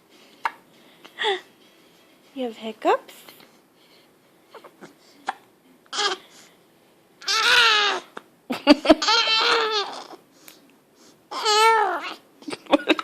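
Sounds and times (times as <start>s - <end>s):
baby babbling and laughing: 5.9s - 6.2s, 7.2s - 8.1s, 9.0s - 10.2s, 11.3s - 12.2s
baby squealing: 6.0s - 6.2s, 7.2s - 8.1s, 9.0s - 10.2s, 11.3s - 12.2s
baby hiccupping: 7.2s - 8.2s.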